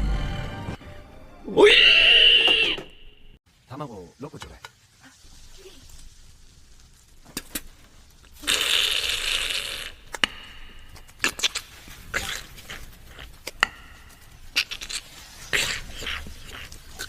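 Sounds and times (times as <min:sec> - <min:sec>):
beatboxed sizzling hiss: 0:08.3 - 0:17.0
mouth clicks: 0:08.4 - 0:17.0.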